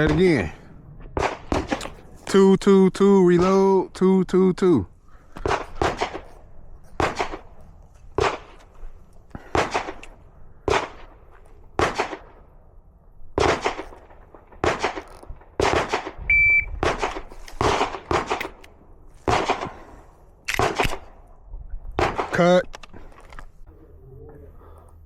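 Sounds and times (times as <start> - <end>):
short high beep: 16.3 - 16.7
handgun shots: 20.5 - 21.1.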